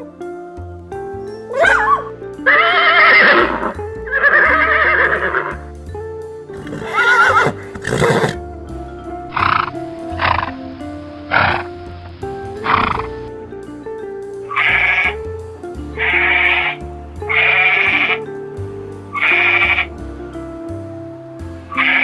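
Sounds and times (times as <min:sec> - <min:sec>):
background music: 0:00.0 - 0:22.0
horse snorting: 0:01.6 - 0:05.5, 0:06.5 - 0:08.4, 0:09.3 - 0:10.6, 0:11.3 - 0:11.7, 0:12.6 - 0:13.2, 0:16.0 - 0:18.2
horses whinnying: 0:01.6 - 0:05.6, 0:06.6 - 0:08.4, 0:09.3 - 0:10.6, 0:11.3 - 0:11.7, 0:12.6 - 0:13.1, 0:14.5 - 0:15.2, 0:16.0 - 0:18.2, 0:19.1 - 0:19.9, 0:21.8 - 0:22.0.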